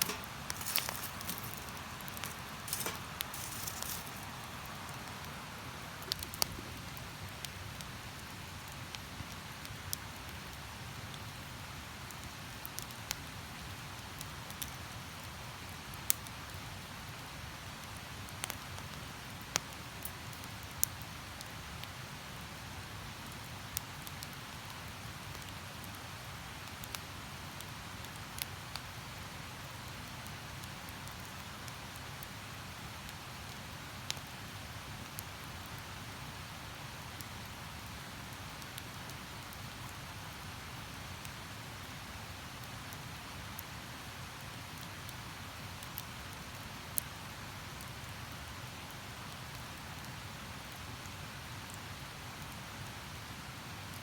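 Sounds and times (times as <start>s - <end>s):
campfire crackling and popping: 0.0s - 10.5s, 11.2s - 21.2s, 23.2s - 25.9s, 26.5s - 27.3s, 28.1s - 36.0s, 36.6s - 43.7s, 44.4s - 47.2s.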